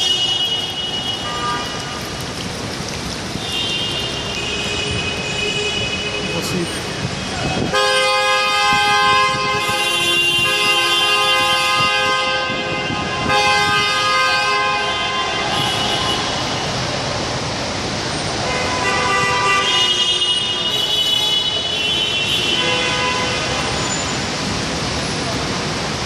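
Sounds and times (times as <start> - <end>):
road traffic: 0.0 - 26.0
car horns blasting: 7.7 - 16.3.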